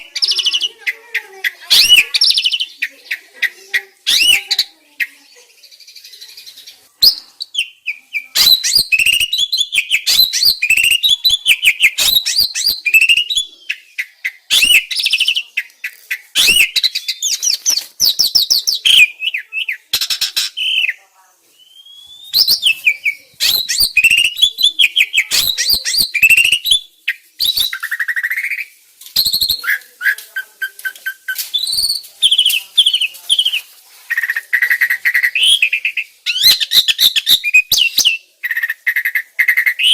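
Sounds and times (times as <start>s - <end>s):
starling song: 6.3s - 38.2s.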